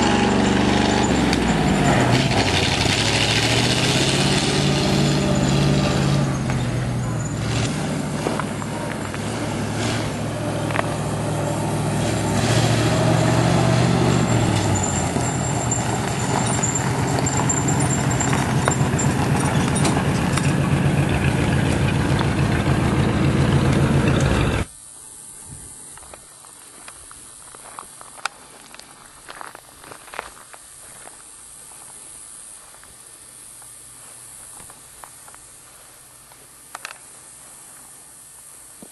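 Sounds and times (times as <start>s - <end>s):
truck engine running: 0.0s - 24.7s.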